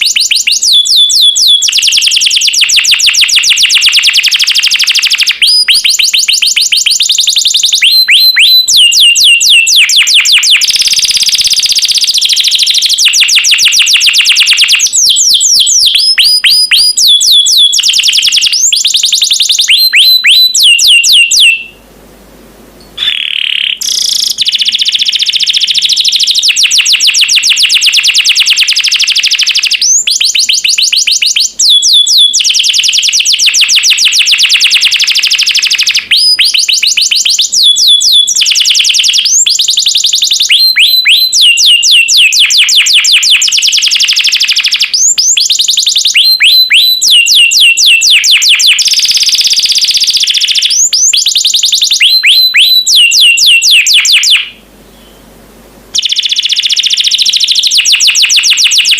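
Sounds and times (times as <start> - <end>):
canary singing trills: 0.0 - 21.8, 22.8 - 55.3, 56.0 - 58.9.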